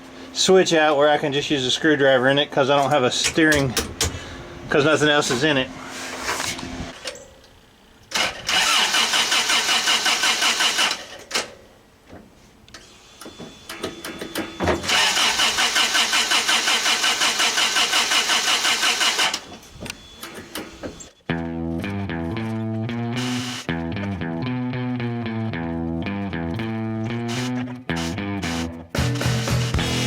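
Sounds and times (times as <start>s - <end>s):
starter cranking engine: 3.2s - 4.4s, 8.1s - 11.2s, 14.8s - 19.5s.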